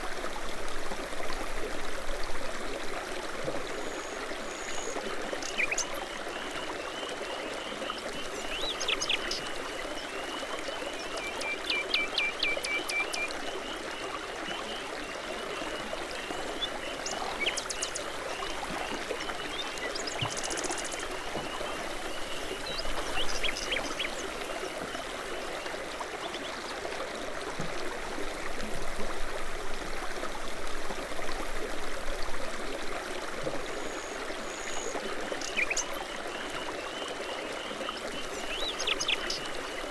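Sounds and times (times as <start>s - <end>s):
brook babbling over stones: 0.0s - 39.9s
songbirds chirping: 4.8s - 26.7s, 34.7s - 39.9s.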